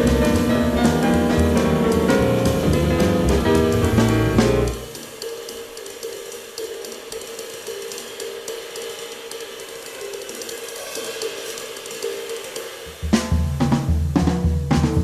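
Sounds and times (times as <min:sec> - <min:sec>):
soft cymbal and hi-hat strokes: 0:04.7 - 0:14.3.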